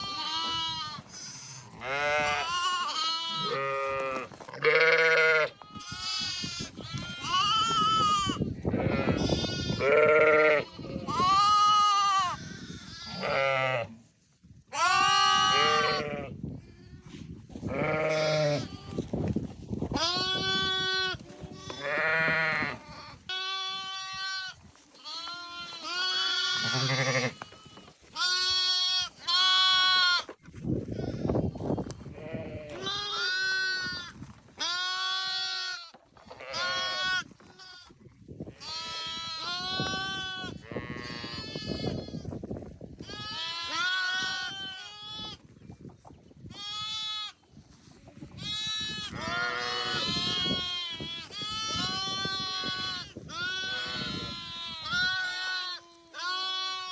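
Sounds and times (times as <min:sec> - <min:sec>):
sheep bleating: 0:00.0 - 0:13.9, 0:14.8 - 0:16.4, 0:17.7 - 0:19.0, 0:20.0 - 0:30.3, 0:32.1 - 0:34.0, 0:34.6 - 0:37.9, 0:43.1 - 0:45.4, 0:48.4 - 0:56.9.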